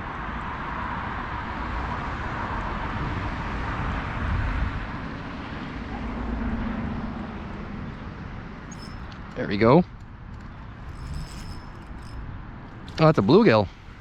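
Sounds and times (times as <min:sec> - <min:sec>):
outdoor low rumble: 0:03.5 - 0:14.0.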